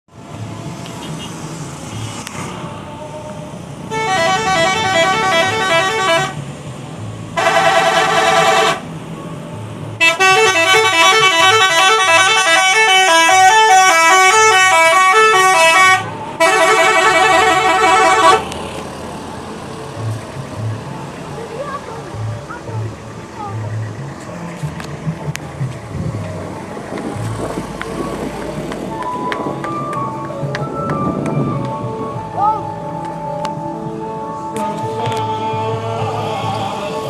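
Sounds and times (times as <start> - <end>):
low hum of bus: 0.1 - 37.0
musical bus air horn: 3.9 - 6.4, 7.4 - 8.9, 10.0 - 18.5.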